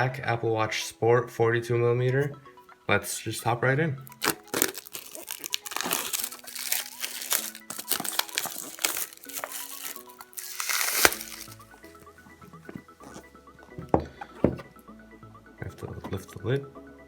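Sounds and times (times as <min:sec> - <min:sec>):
electronic background music: 0:00.0 - 0:17.0
plastic wrapping crinkling: 0:04.1 - 0:12.0.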